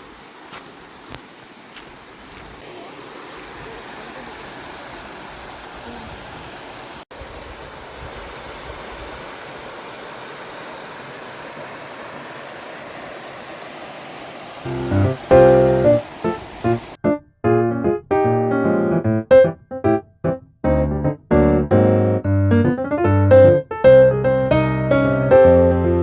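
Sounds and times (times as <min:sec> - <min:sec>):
stream water rushing: 0:00.0 - 0:17.0.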